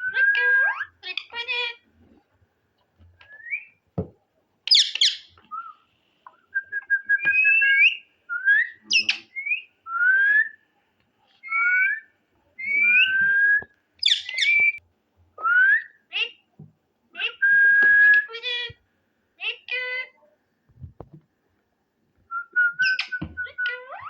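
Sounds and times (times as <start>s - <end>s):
parrot whistling: 11.4s - 14.8s, 22.3s - 24.0s.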